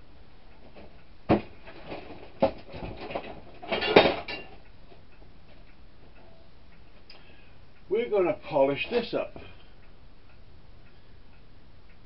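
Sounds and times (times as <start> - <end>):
hard objects clattering: 0.7 - 4.6.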